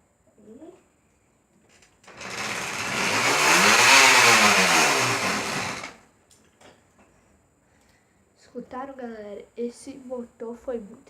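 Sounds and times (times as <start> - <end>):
spoke noisemaker rattling: 2.1 - 6.0.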